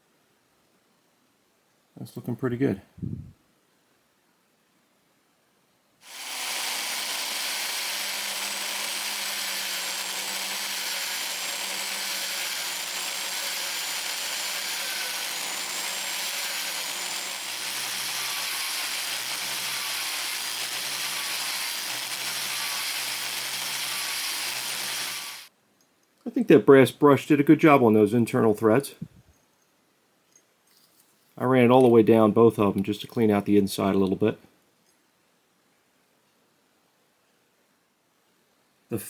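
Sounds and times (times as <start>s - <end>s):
power tool spinning wire brush: 6.0s - 25.5s.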